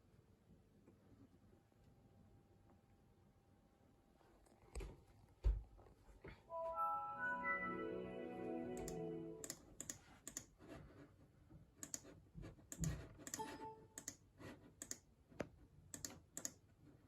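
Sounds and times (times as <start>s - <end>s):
music: 6.5s - 9.5s.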